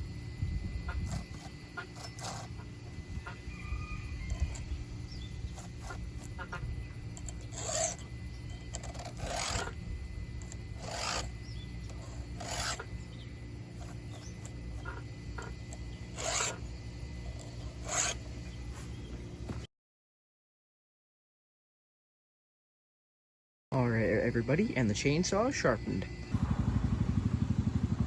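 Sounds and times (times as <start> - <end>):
file rasping on chainsaw chain: 0.9 - 18.9.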